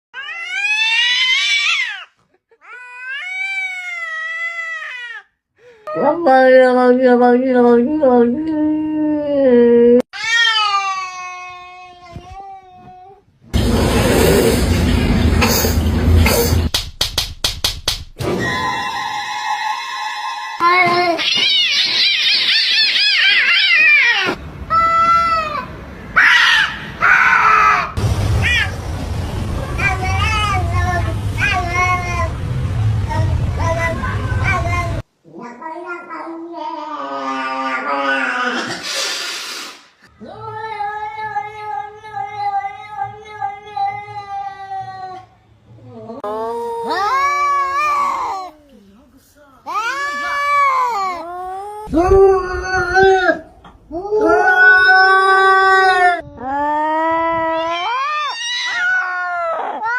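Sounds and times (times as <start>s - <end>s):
cat yowling and meowing: 0.2s - 5.2s, 10.2s - 12.9s, 19.0s - 27.9s, 49.7s - 59.9s
cat meowing: 20.6s - 24.4s.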